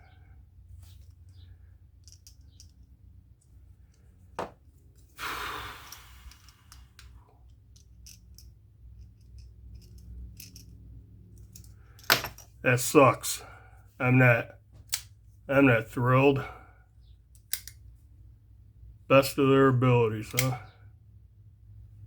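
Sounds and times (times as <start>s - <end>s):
short breathy exhale: 5.2s - 6.9s.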